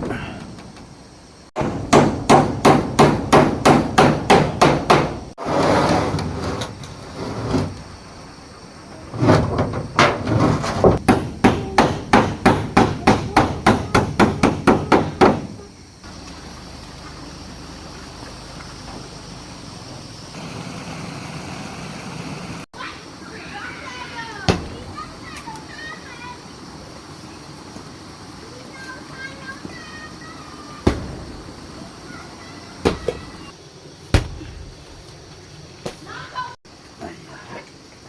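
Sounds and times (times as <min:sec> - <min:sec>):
hammer driving nails into wood: 0:01.6 - 0:05.2, 0:10.8 - 0:15.5.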